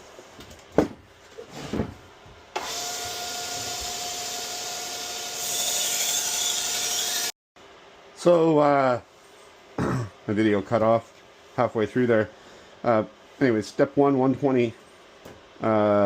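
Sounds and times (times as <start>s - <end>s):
belt grinder whining: 2.6s - 7.4s.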